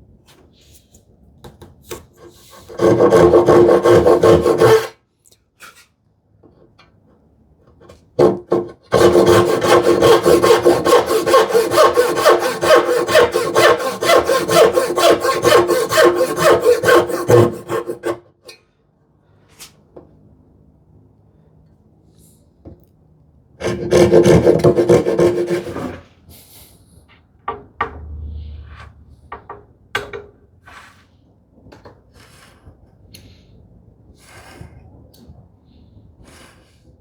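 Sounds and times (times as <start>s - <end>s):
hand saw cutting wood: 2.2s - 5.0s, 8.2s - 18.2s, 23.6s - 26.1s, 32.0s - 33.3s.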